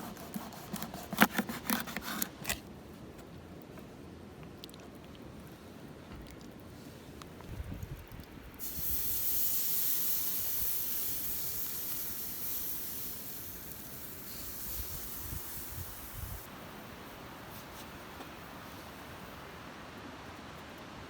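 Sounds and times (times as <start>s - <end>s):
steady hiss: 6.7s - 21.0s.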